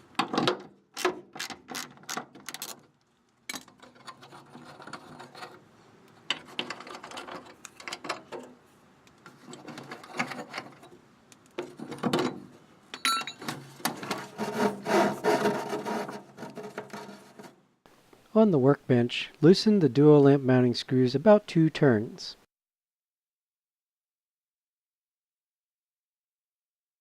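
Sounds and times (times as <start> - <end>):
metal clicks and scraping: 0.0 - 17.6.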